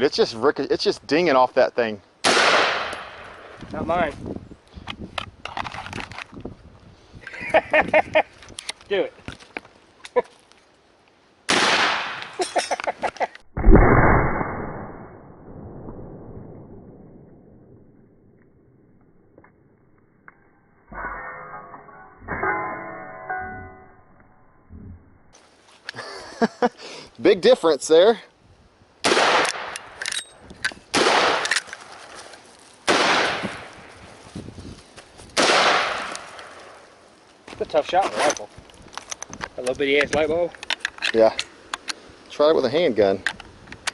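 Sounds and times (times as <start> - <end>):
rifle shots: 2.2 - 3.5, 11.5 - 12.4, 13.6 - 17.1, 29.0 - 30.0, 30.9 - 31.7, 32.9 - 33.7, 35.4 - 36.5
slowed gunshot boom: 13.6 - 18.4.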